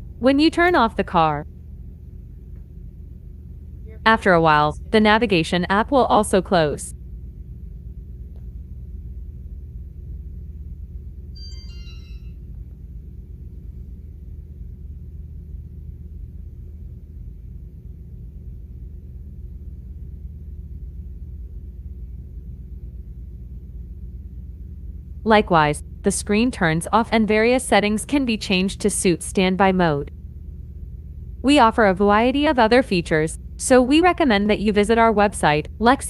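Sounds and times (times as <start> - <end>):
steady low hum: 0.0 - 36.0
falling electronic chime: 11.4 - 12.4.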